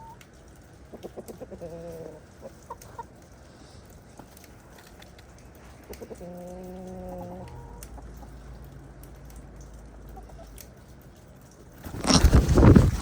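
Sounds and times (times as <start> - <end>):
hens clucking: 0.8 - 3.2, 5.7 - 8.5.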